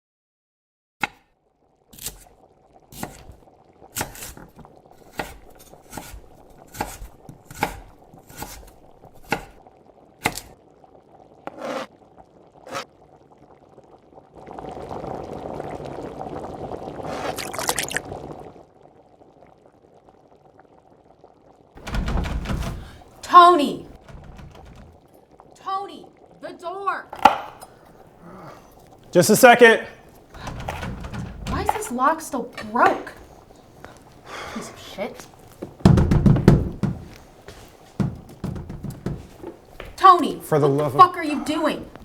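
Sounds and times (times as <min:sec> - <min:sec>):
knife chopping on cutting board: 0:05.1 - 0:09.5, 0:27.2 - 0:27.7
liquid pouring: 0:17.4 - 0:18.1.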